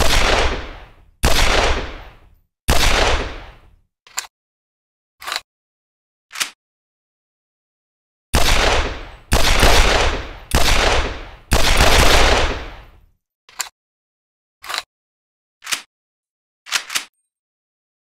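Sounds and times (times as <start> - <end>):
pistol shots with echo: 0.0 - 3.7, 8.4 - 13.0.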